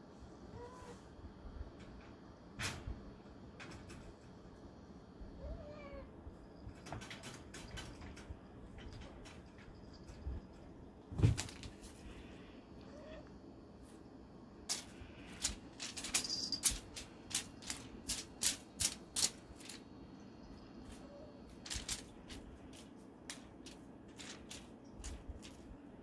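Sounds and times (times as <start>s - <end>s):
cat playing clicks and taps: 1.7s - 4.6s, 6.5s - 12.2s, 14.6s - 26.0s.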